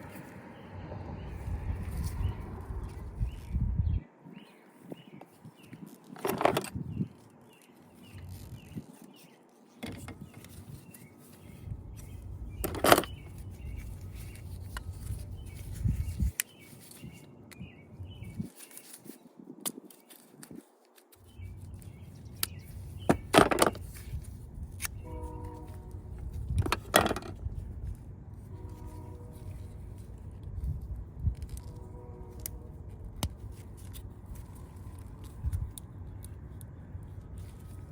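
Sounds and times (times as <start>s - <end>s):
small birds chirping: 0.1s - 26.4s
scraping handling noise: 4.5s - 37.9s.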